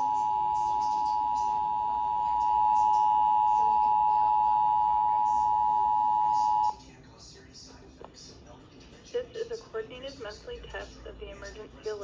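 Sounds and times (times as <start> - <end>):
steady dual-tone alert signal: 0.0 - 6.7.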